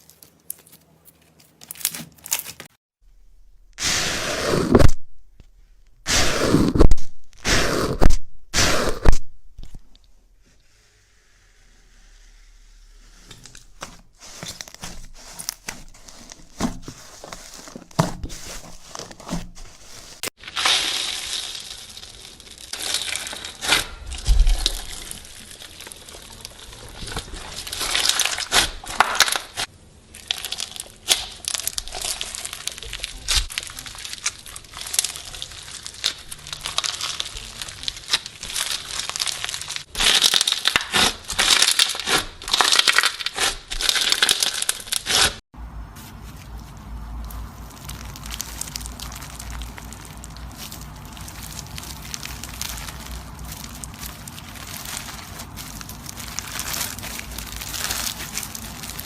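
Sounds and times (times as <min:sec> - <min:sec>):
slime squished by hand: 0:47.2 - 0:59.0.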